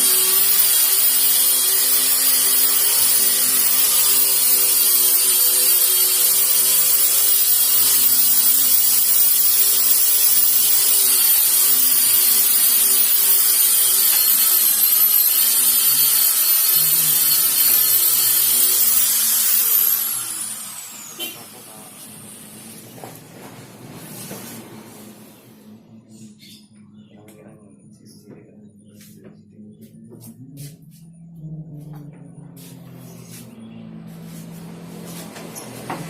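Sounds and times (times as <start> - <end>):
power sander whining: 0.0 - 23.0, 31.3 - 36.0.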